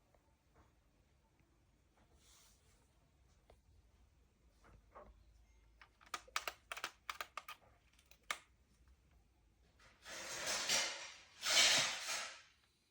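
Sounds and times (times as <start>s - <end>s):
sharp clicks and taps: 5.8s - 8.5s.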